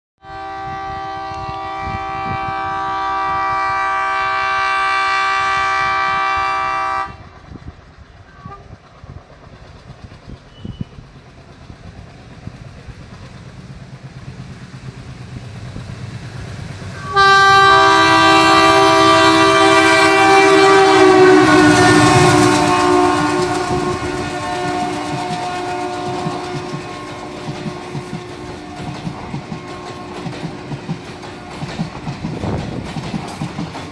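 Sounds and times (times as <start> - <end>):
locomotive horn blasts: 0.2 - 7.3, 17.0 - 30.8
train wheels clicking over rail joints: 7.2 - 33.9.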